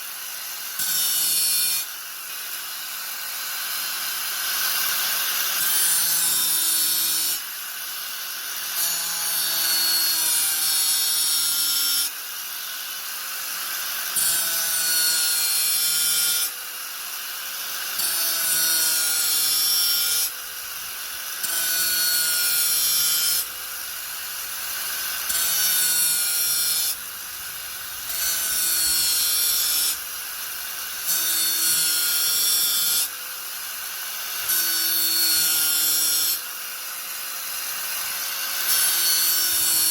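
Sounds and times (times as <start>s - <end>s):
angle grinder grinding: 13.5s - 36.5s.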